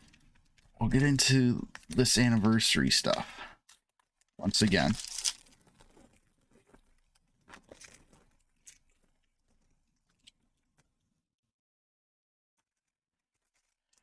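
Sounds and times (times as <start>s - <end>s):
card packaging rustling and crinkling: 1.8s - 9.3s.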